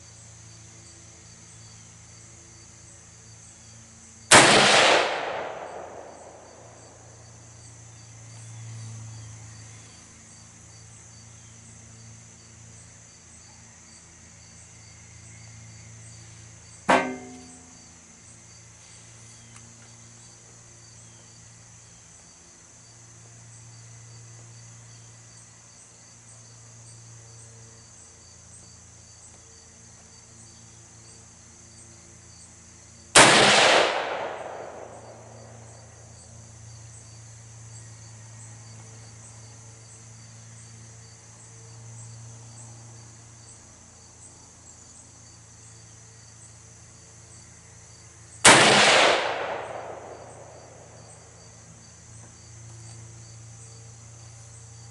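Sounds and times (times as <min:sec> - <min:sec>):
insects chirring: 0:00.0 - 0:54.9
rifle shots: 0:04.3 - 0:06.8, 0:33.2 - 0:35.3, 0:48.5 - 0:50.9.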